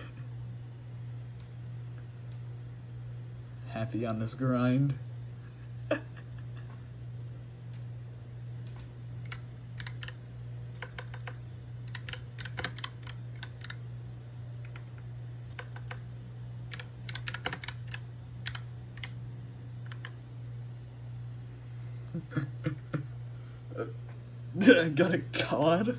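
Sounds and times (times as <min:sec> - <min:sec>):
low hum: 0:00.0 - 0:25.9
keyboard keys clicking: 0:09.2 - 0:10.2, 0:10.8 - 0:13.8, 0:14.6 - 0:16.0, 0:16.7 - 0:19.2, 0:19.8 - 0:20.2.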